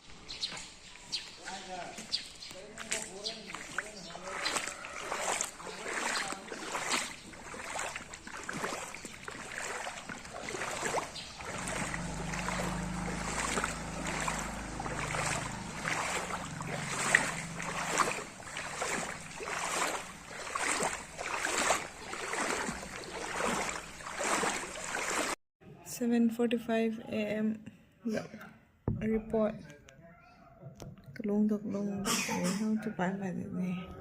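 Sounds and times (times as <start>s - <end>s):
rhythmic water splashing: 0.5s - 25.4s
low hum: 10.6s - 24.8s.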